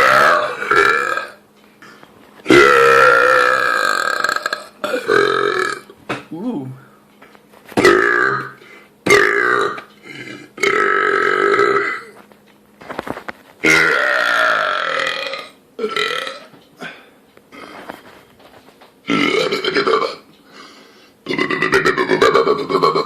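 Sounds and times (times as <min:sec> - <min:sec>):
person burping: 0:00.0 - 0:01.4, 0:02.5 - 0:06.0, 0:07.8 - 0:12.2, 0:13.6 - 0:17.7, 0:19.1 - 0:20.3, 0:21.2 - 0:23.0.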